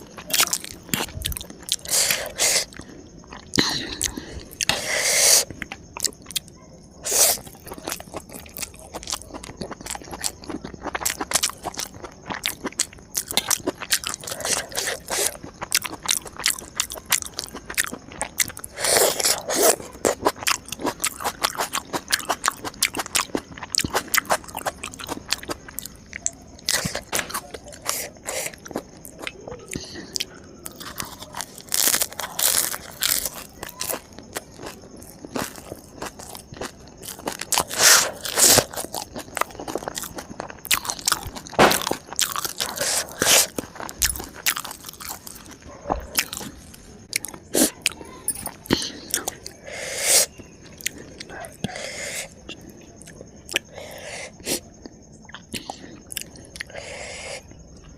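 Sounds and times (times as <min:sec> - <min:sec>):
chewing: 0:00.0 - 0:57.9
crunching crisp food: 0:00.0 - 0:57.9.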